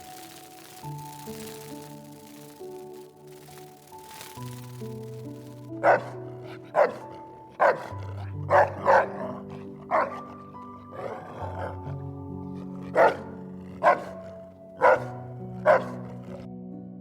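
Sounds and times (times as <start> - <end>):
background music: 0.0 - 17.0
dog barking: 5.8 - 11.8, 12.6 - 16.4.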